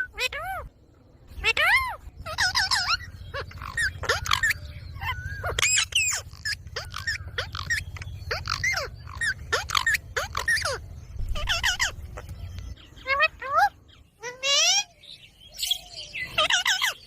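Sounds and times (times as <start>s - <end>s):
parakeet squawking: 0.0s - 0.7s, 1.3s - 15.0s, 15.6s - 17.0s.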